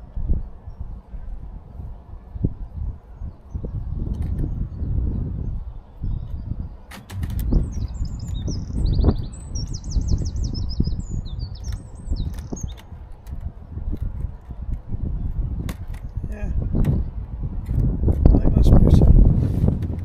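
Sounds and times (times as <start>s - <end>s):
low rumble: 0.0s - 12.4s
songbird chirping and trilling: 0.0s - 17.4s
sharp clicks: 6.9s - 9.8s, 11.5s - 14.8s.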